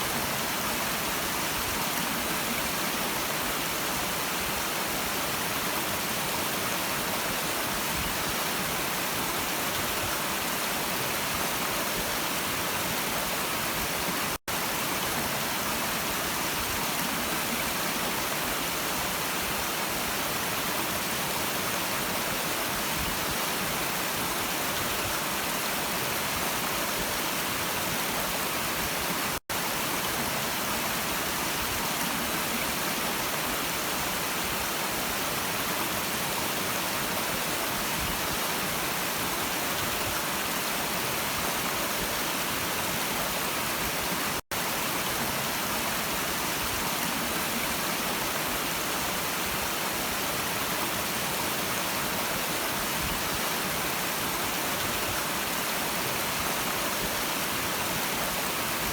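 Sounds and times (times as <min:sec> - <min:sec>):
brook water flowing: 0:00.0 - 0:58.9.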